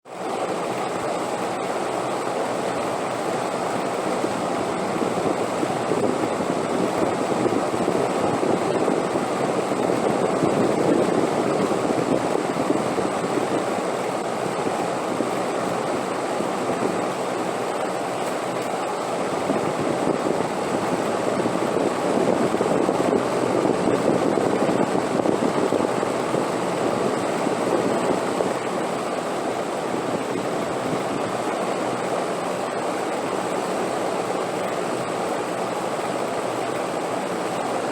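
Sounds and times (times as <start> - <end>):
wind blowing: 19.1 - 32.2.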